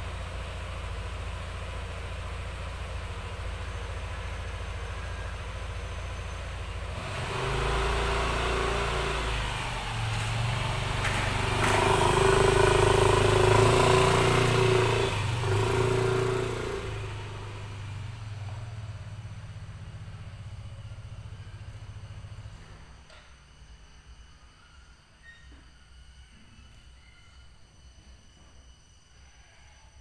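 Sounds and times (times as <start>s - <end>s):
vehicle engine passing by: 3.6s - 22.6s.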